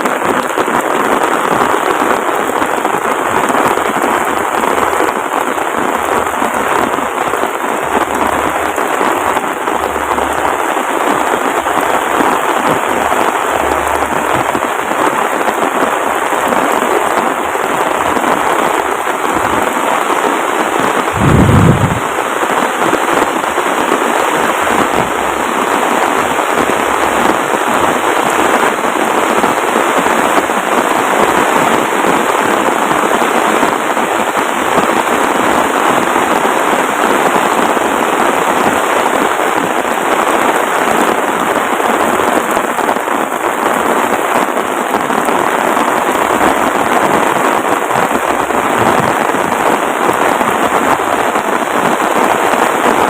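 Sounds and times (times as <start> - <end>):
heavy rain pouring: 0.0 - 53.0
low thump: 21.2 - 22.2.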